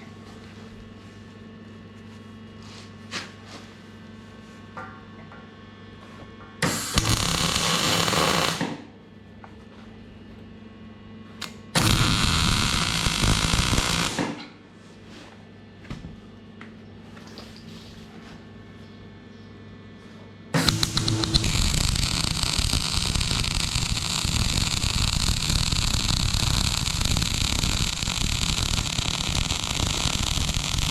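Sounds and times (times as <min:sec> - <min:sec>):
steady electrical hum: 0:00.0 - 0:30.9
electric arc welding hiss: 0:06.6 - 0:08.7, 0:11.8 - 0:14.4, 0:20.6 - 0:30.9.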